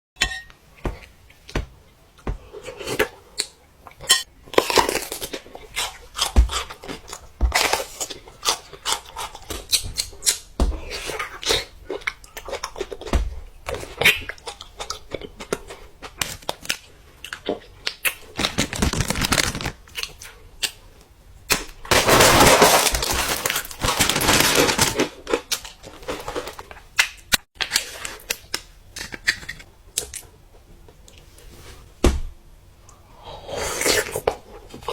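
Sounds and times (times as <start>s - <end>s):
crunchy biting and chewing: 4.5s - 13.1s.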